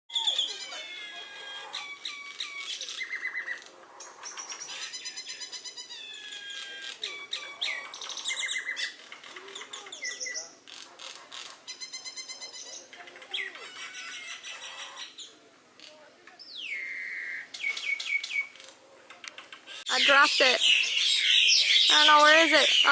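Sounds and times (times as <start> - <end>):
birds chirping and squawking: 0.1 - 22.9
falling whistled calls: 16.4 - 18.5, 19.8 - 22.9.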